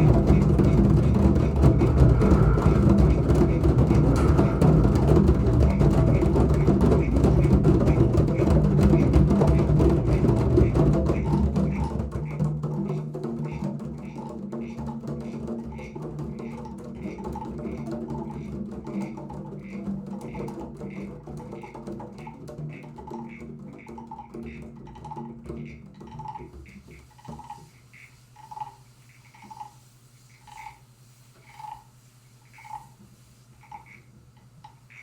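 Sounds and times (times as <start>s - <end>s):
children playing drums: 0.0s - 27.6s.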